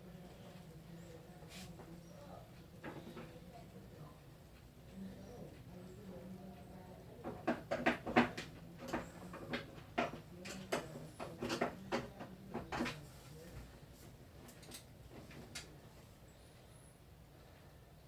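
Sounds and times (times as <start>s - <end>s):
plastic parts clicking and knocking: 7.2s - 13.0s.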